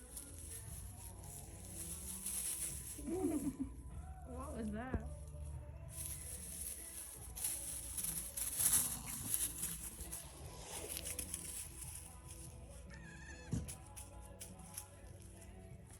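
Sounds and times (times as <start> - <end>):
background music: 0.0 - 15.9
baby goat bleat: 12.9 - 13.7.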